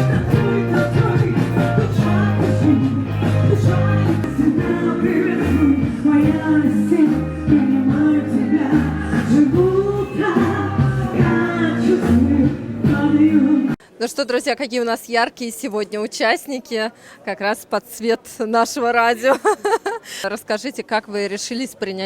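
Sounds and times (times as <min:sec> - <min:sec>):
rock band playing: 0:00.0 - 0:13.3
person singing: 0:00.0 - 0:13.8.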